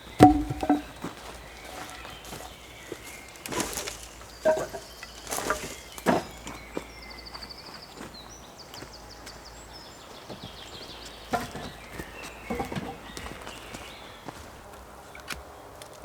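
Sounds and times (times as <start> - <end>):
wood knocks and thuds: 0.2 - 1.2, 3.6 - 6.6, 11.3 - 13.4.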